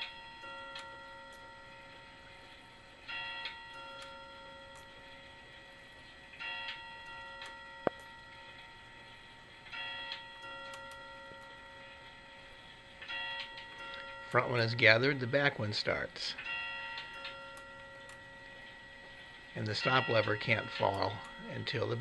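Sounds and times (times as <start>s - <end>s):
clock chime ringing: 0.0s - 22.0s
clock ticking: 19.6s - 22.0s.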